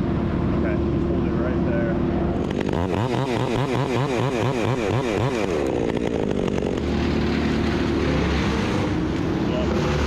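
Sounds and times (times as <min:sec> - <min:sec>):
engine droning: 0:00.0 - 0:10.0
chainsaw engine revving: 0:02.4 - 0:08.9.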